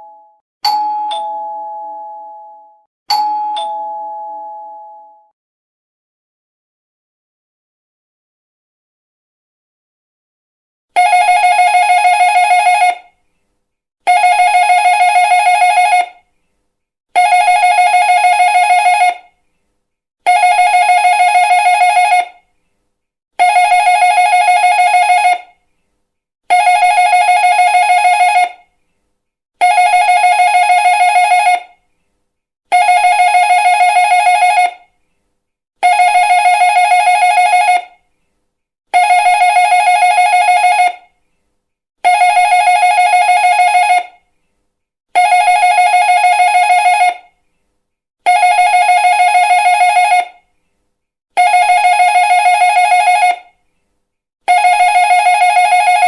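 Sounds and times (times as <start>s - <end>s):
electric doorbell ringing: 0.0s - 5.3s.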